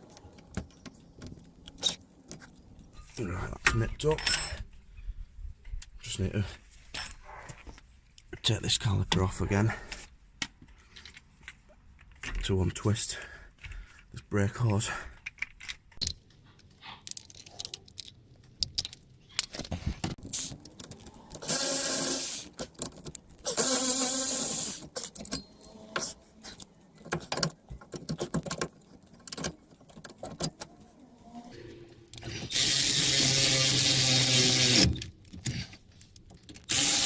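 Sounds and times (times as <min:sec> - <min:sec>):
metal tools clinking and knocking: 0:04.0 - 0:04.8, 0:06.8 - 0:07.2, 0:25.0 - 0:30.6
cordless power tool running: 0:32.5 - 0:34.9.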